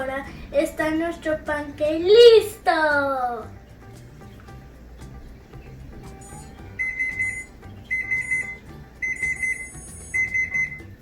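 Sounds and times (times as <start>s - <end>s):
oven timer beeping: 6.2s - 11.0s.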